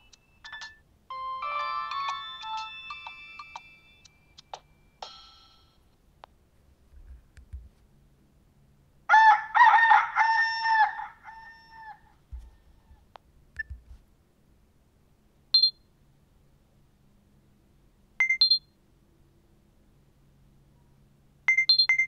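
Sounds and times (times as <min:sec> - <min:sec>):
rooster crowing ringtone: 0:00.6 - 0:05.0.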